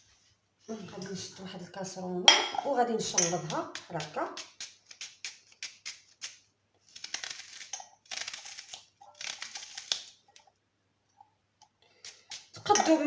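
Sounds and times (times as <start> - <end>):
knife cutting raw onion: 3.2 - 10.2.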